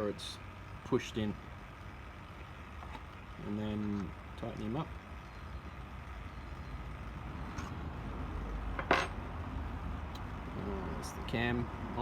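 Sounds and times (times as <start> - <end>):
low steady background hum: 0.0 - 12.0
small metallic clinks: 8.8 - 9.2.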